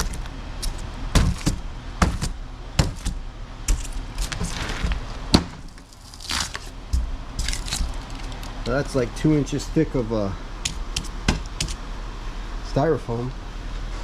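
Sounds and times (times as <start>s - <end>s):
crackling tearing: 0.0s - 1.6s, 3.7s - 6.8s, 7.4s - 8.6s
wood cracking and snapping: 0.0s - 8.6s.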